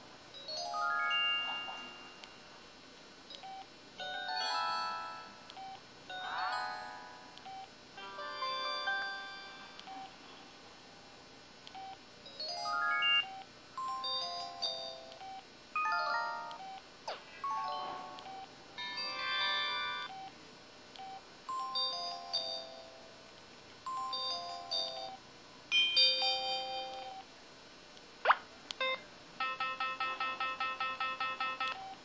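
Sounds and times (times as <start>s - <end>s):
electronic ringtone melodies: 0.5s - 2.2s, 12.4s - 15.0s, 28.8s - 31.8s.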